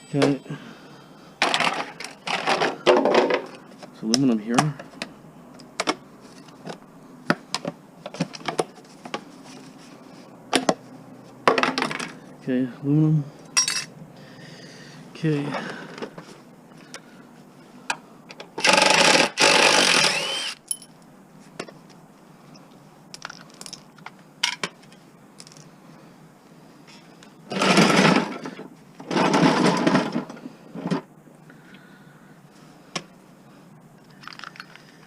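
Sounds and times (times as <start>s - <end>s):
power driver bursts: 18.6s - 20.6s.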